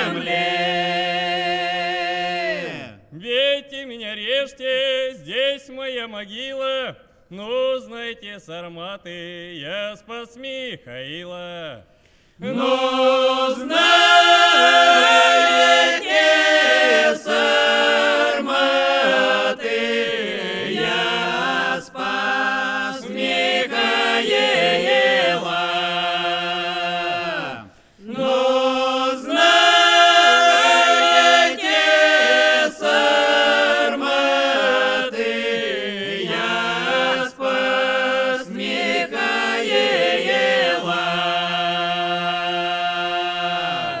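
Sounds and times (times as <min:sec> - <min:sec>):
group singing in harmony: 0:00.0 - 0:03.0, 0:12.4 - 0:44.0.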